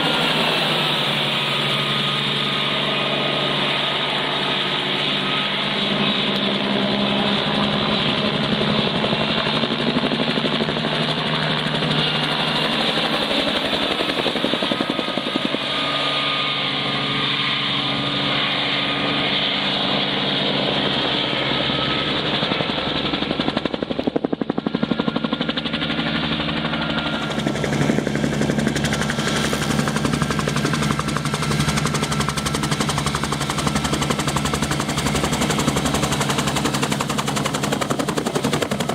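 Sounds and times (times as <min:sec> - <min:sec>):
helicopter engine droning: 0:00.0 - 0:38.9.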